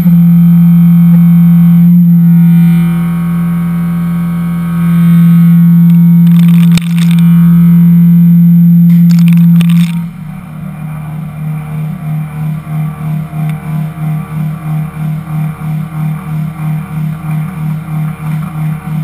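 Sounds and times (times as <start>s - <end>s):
milling machine cutting metal: 8.9s - 19.0s.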